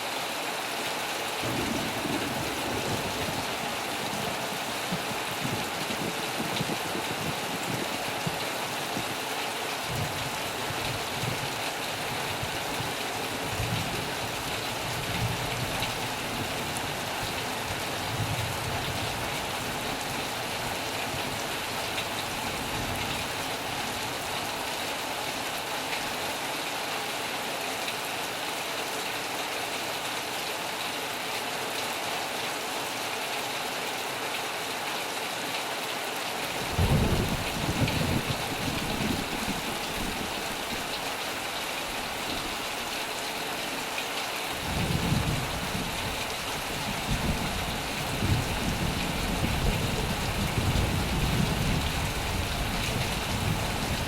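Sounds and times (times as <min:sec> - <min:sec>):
heavy rain hissing: 0:00.4 - 0:31.4, 0:36.3 - 0:54.0
low rumble of thunder: 0:01.4 - 0:08.4, 0:36.5 - 0:41.0, 0:44.6 - 0:54.0.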